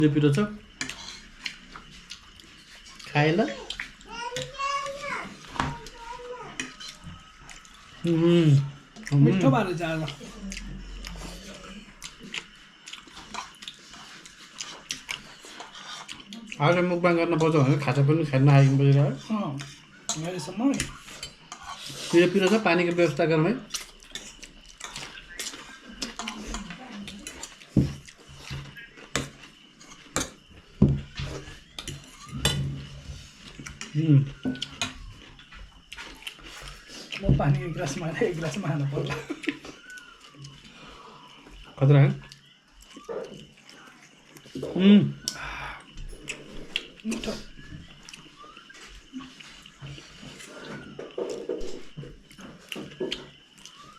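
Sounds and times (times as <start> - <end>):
chewing and lip smacks: 0.8 - 4.1, 10.0 - 16.6, 23.6 - 30.5, 33.5 - 37.2, 42.2 - 44.6.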